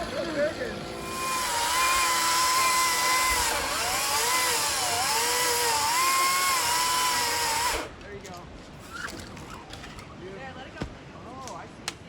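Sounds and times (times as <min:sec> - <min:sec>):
chainsaw cutting wood: 0:00.8 - 0:07.9.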